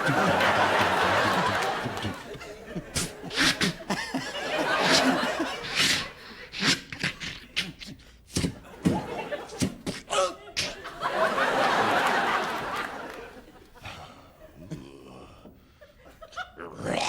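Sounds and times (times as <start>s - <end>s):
mouth sound effects: 0.0s - 4.1s
studio audience laughing: 0.0s - 6.4s, 8.5s - 14.6s.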